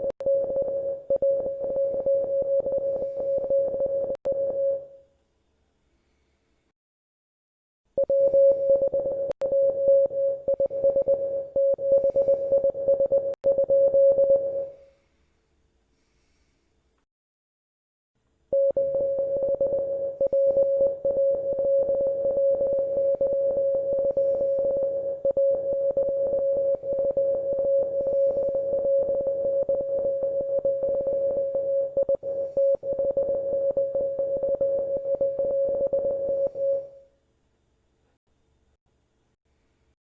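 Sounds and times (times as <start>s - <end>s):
morse code beeps: 0.0s - 4.8s, 8.0s - 14.8s, 18.6s - 37.0s.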